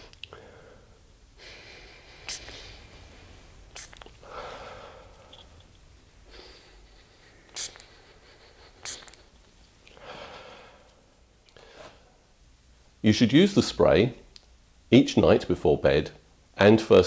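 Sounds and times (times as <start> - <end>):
breathy sniffs: 0.0 - 5.6, 6.3 - 9.2
spray bottle squirts: 3.7 - 4.2, 7.5 - 7.8.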